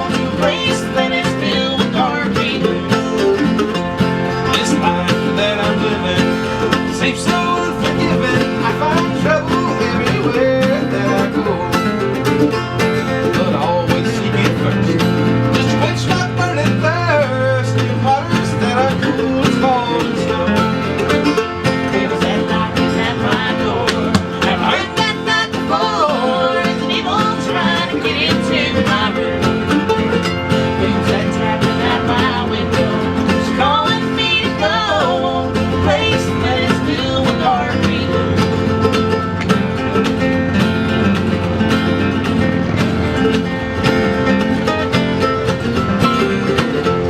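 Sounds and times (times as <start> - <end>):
acoustic bluegrass band playing: 0.0 - 47.0.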